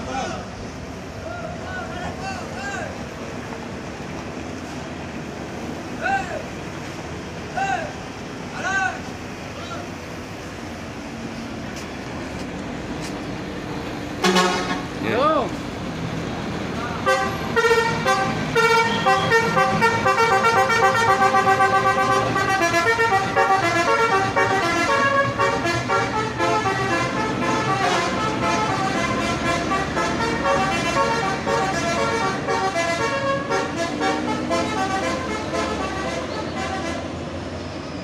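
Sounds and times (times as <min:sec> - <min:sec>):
musical air horn melody: 0:14.2 - 0:14.9, 0:17.0 - 0:37.1.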